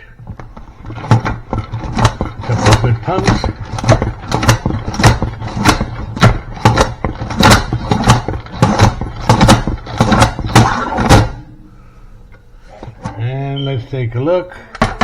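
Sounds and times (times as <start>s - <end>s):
salad spinner being pumped: 0.8s - 11.4s.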